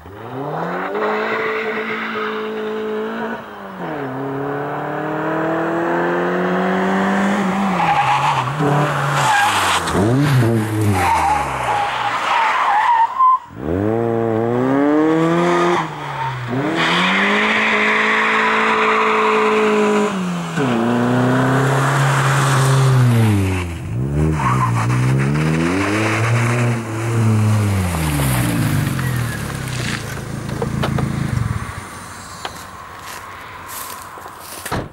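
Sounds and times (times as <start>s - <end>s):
car engine revving: 13.6s - 34.6s.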